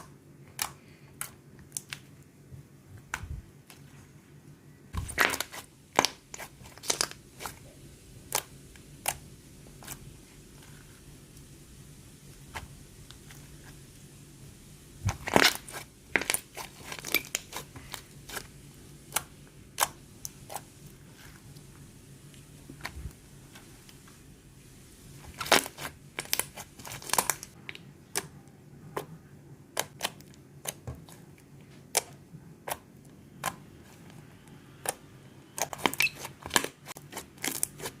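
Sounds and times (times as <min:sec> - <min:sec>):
slime popping and crackling: 0:05.0 - 0:09.2, 0:15.0 - 0:20.8, 0:25.2 - 0:28.2, 0:35.6 - 0:38.0.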